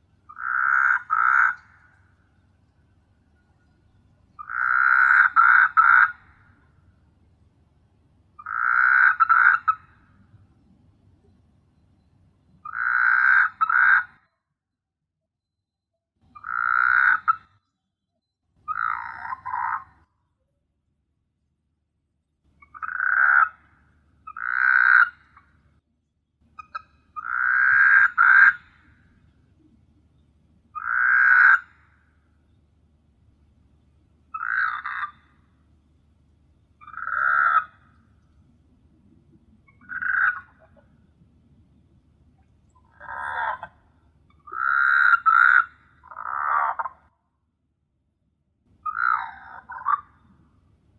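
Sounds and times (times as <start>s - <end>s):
frog croaking: 0.3s - 2.1s, 4.4s - 6.7s, 8.4s - 10.2s, 12.6s - 14.2s, 16.3s - 17.5s, 18.7s - 20.1s, 22.6s - 25.6s, 26.6s - 29.1s, 30.8s - 32.1s, 34.3s - 35.5s, 36.8s - 38.0s, 39.6s - 41.0s, 42.8s - 47.1s, 48.8s - 50.4s.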